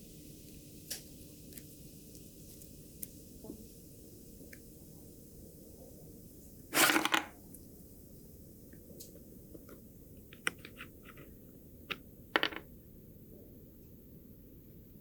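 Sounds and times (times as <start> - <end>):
light clicks and taps: 8.7 - 11.3.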